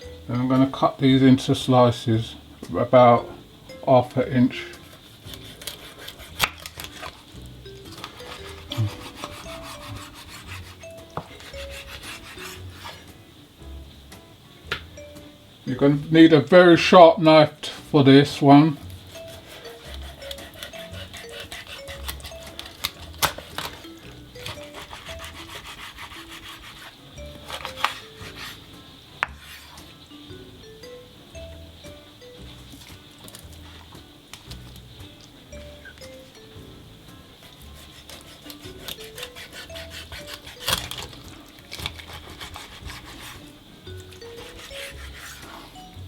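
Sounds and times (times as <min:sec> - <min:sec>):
light jazz music: 0:00.0 - 0:46.0
knife sawing through fish: 0:04.8 - 0:07.2, 0:08.1 - 0:13.0, 0:19.1 - 0:23.8, 0:24.4 - 0:28.7, 0:37.6 - 0:43.5, 0:44.4 - 0:45.8.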